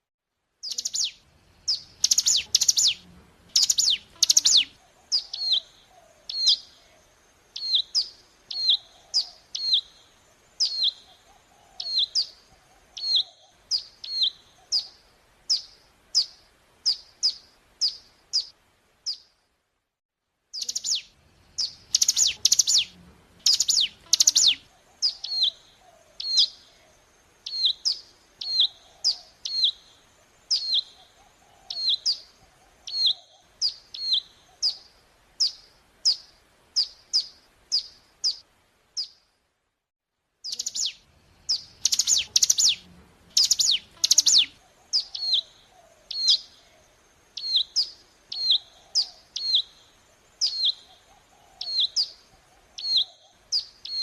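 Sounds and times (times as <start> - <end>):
bird chattering notes: 0.6 - 5.6, 20.6 - 25.6, 40.5 - 45.5
sharp down-slurred bird chirps: 0.6 - 6.8, 7.6 - 19.4, 20.5 - 39.3, 40.4 - 54.0.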